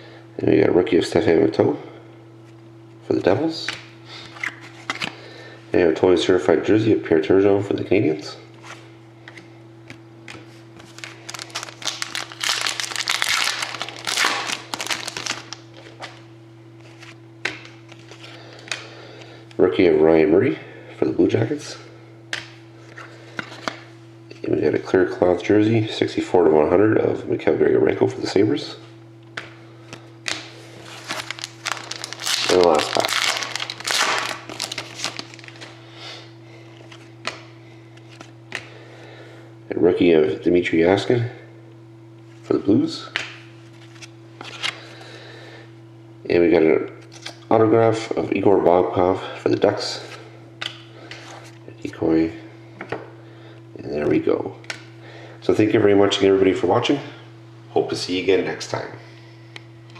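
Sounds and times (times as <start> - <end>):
electrical hum: 0.0 - 59.9
wrapper crinkling and tearing: 10.8 - 16.2, 30.3 - 35.7.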